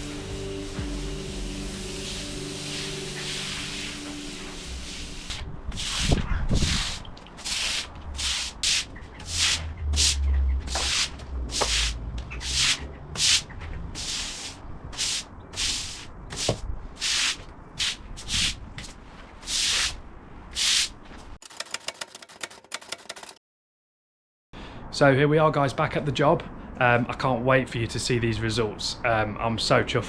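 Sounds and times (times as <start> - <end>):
stiff brush scrubbing paving: 5.7 - 18.5.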